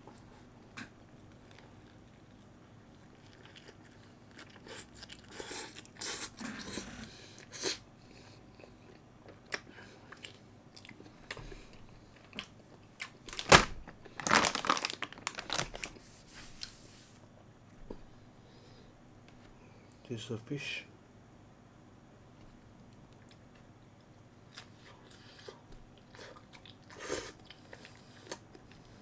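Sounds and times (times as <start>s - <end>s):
biting and chewing burger: 1.3s - 6.9s.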